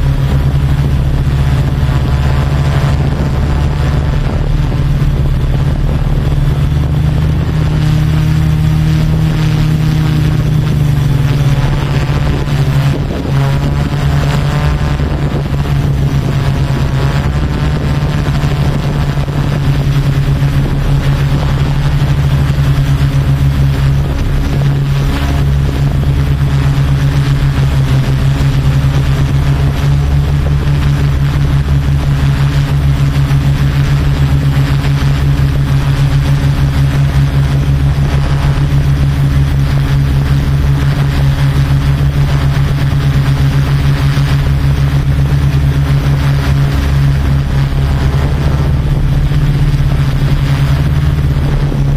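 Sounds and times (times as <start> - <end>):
drone propellers humming: 0.0 - 51.9.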